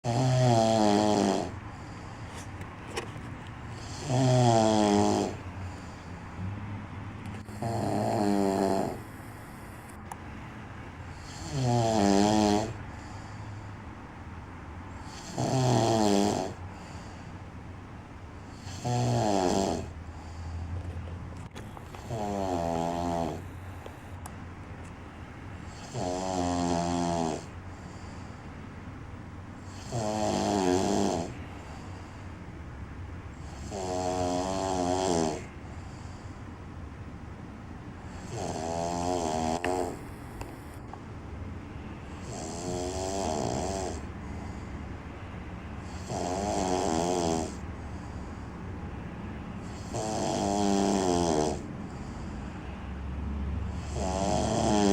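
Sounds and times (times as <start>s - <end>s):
man snoring loudly: 0.0s - 2.0s, 3.8s - 6.6s, 7.4s - 9.8s, 11.1s - 13.3s, 15.0s - 17.1s, 18.5s - 20.0s, 22.0s - 23.5s, 25.7s - 27.9s, 29.6s - 31.4s, 33.4s - 35.5s, 38.1s - 40.8s, 42.2s - 44.6s, 45.8s - 47.6s, 49.6s - 52.3s, 53.7s - 54.9s
quiet breaths: 0.0s - 54.9s.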